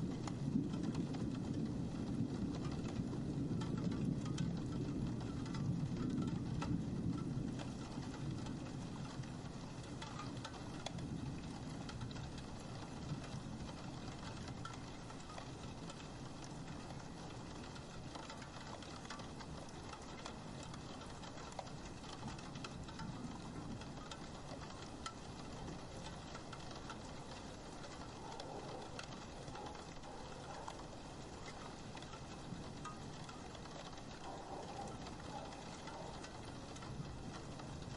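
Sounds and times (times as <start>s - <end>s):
rain pattering on glass: 0.0s - 37.9s.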